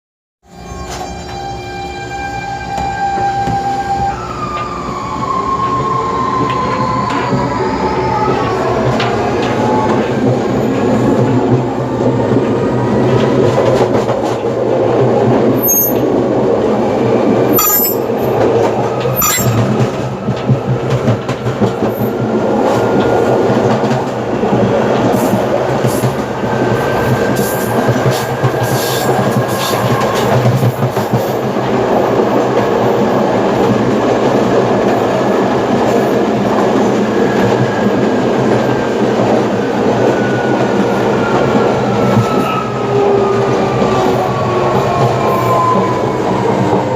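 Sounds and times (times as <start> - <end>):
rolling rail noise: 0.4 - 46.9
brief high squeaks: 0.5 - 1.5, 15.6 - 16.0, 17.6 - 18.1, 19.2 - 19.7.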